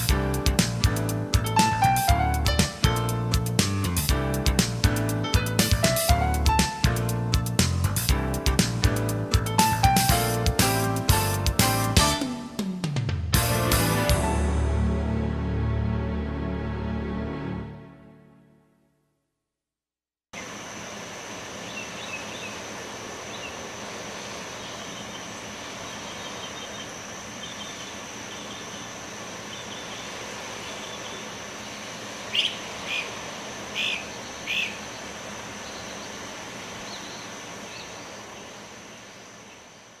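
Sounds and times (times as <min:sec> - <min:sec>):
outdoor background hiss: 0:00.0 - 0:14.5, 0:20.4 - 0:40.0
birds chirping: 0:21.4 - 0:40.0.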